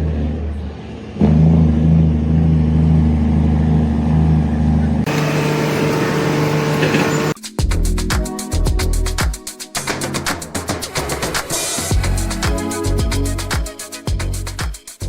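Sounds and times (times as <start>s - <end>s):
engine humming: 5.0s - 7.4s.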